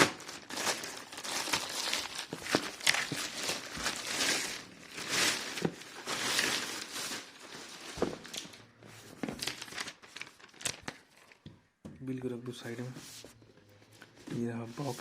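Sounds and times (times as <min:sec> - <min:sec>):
packaging crinkling and rustling: 0:00.0 - 0:11.5.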